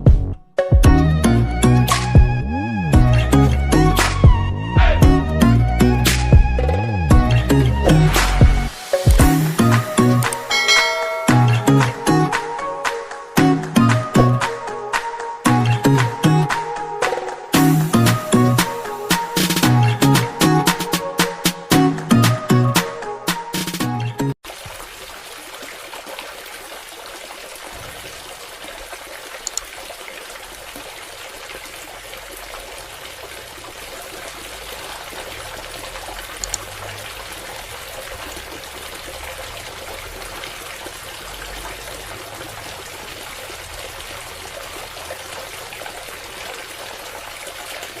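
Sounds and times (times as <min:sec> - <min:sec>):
water pouring and trickling: 0:06.2 - 0:12.6, 0:17.5 - 0:20.3, 0:24.4 - 0:48.0.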